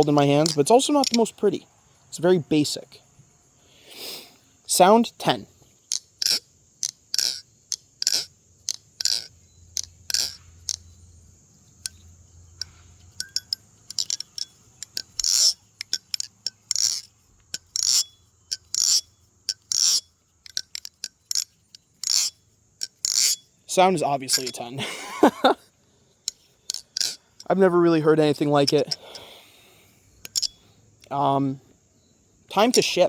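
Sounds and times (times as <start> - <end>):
butterfly knife clacking: 0.0 - 1.4, 5.9 - 11.0, 11.7 - 25.5, 26.2 - 29.4, 30.2 - 30.6.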